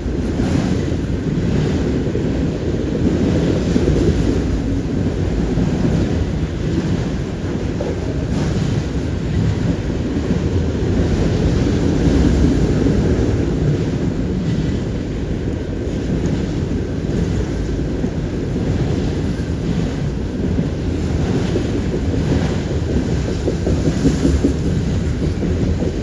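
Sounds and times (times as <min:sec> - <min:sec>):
freight train cars rumbling: 0:00.0 - 0:26.0
wind buffeting microphone: 0:00.0 - 0:26.0.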